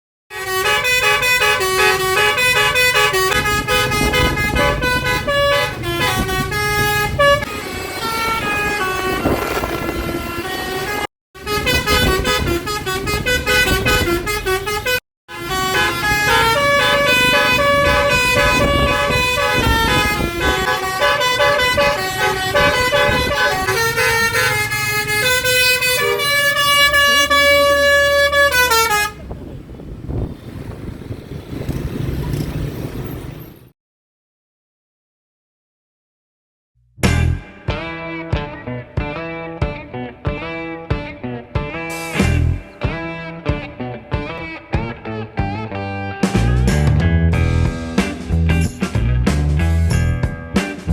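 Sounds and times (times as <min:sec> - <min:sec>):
bus horn playing a tune: 0:00.3 - 0:29.4
bus engine rumble: 0:00.4 - 0:33.7, 0:46.4 - 0:50.9.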